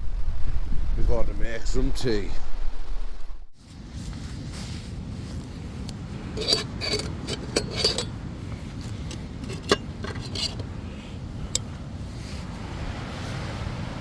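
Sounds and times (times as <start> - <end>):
wind rumble: 0.0 - 14.0
light clinks and knocks: 6.4 - 8.2, 8.8 - 10.7.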